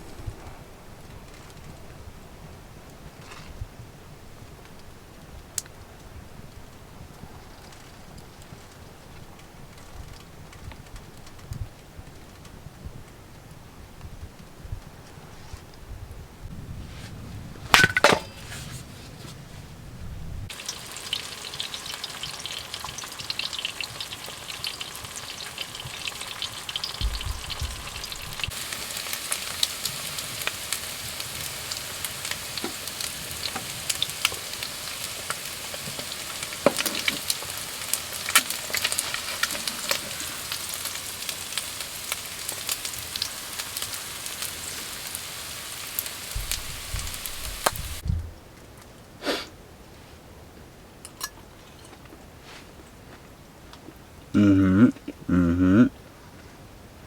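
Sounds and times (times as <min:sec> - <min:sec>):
food sizzling and crackling: 0:20.5 - 0:48.1.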